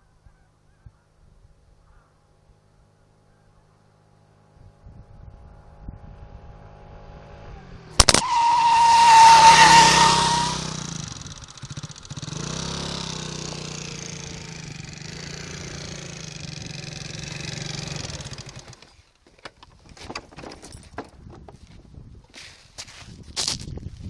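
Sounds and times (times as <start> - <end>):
vehicle engine running: 3.0 - 19.0
sharp clicks: 8.0 - 8.3
brakes squealing: 8.0 - 19.0.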